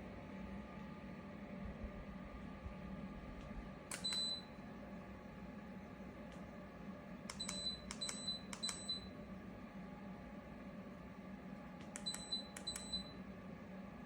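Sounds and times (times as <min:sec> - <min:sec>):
fan heater humming: 0:00.0 - 0:14.0
button clicks: 0:03.9 - 0:04.4, 0:07.3 - 0:09.0, 0:11.8 - 0:13.1.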